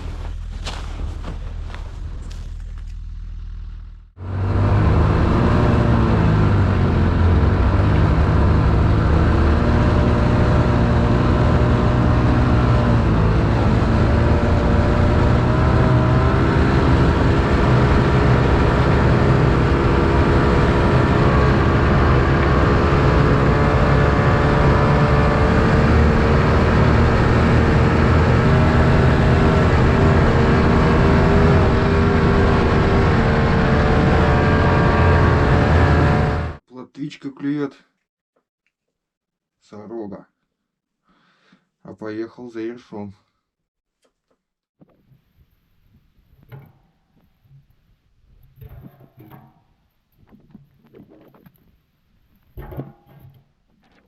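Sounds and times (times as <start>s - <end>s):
vehicle engine running: 0.0s - 36.6s.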